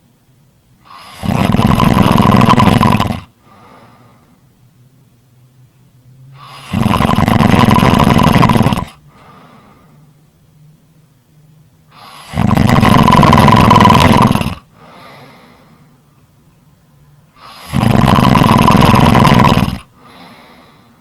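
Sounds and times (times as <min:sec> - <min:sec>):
loud snores: 0:00.8 - 0:03.4, 0:06.4 - 0:09.0, 0:11.9 - 0:14.7, 0:17.4 - 0:20.2
quiet breathing: 0:03.3 - 0:04.6, 0:08.8 - 0:10.3, 0:11.9 - 0:12.4, 0:14.2 - 0:16.2, 0:17.3 - 0:21.0.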